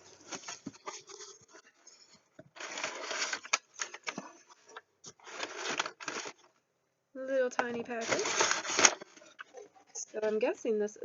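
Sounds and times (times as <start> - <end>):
packaging rustling and crinkling: 0.0 - 6.6, 7.6 - 9.8.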